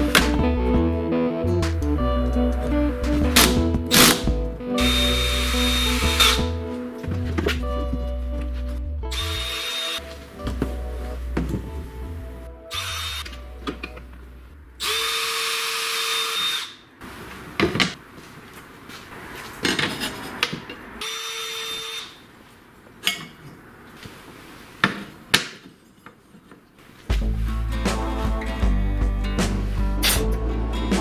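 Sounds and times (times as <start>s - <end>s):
background music: 0.0s - 14.8s, 27.1s - 31.0s
power drill whining: 3.4s - 6.6s, 9.2s - 10.0s, 12.7s - 13.4s, 14.8s - 16.8s, 21.0s - 22.2s.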